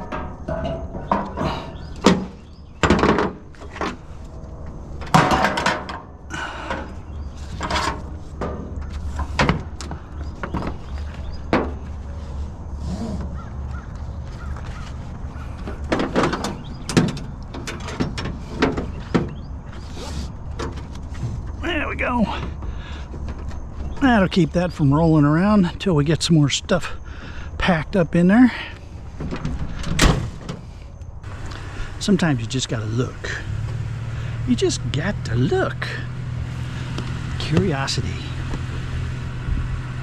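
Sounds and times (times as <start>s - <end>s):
objects knocking and clunking: 0.0s - 12.1s, 13.2s - 19.8s, 22.2s - 24.0s.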